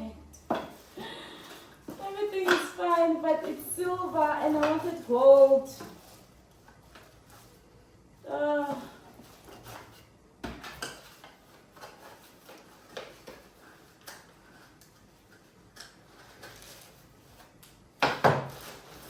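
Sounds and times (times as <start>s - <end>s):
person humming: 8.3s - 9.0s.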